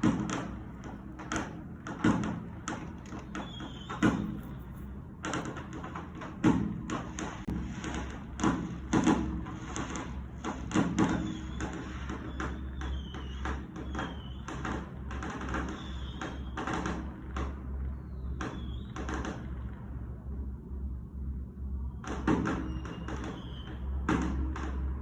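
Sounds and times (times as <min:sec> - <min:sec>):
fireworks bangs: 0:00.0 - 0:17.5, 0:22.0 - 0:25.0
fireworks pops: 0:00.0 - 0:19.9, 0:22.0 - 0:25.0
falling whistles: 0:03.0 - 0:04.7, 0:22.6 - 0:24.0.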